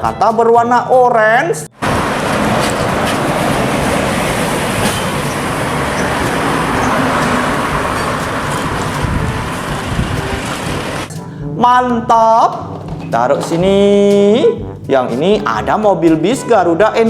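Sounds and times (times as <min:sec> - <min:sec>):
road traffic noise: 0:01.7 - 0:11.4
low engine rumble: 0:01.8 - 0:12.1.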